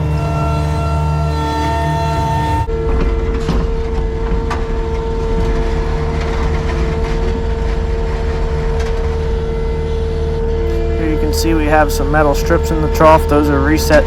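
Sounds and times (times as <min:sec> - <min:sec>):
farm machinery engine running: 0:00.0 - 0:02.7, 0:10.2 - 0:14.0.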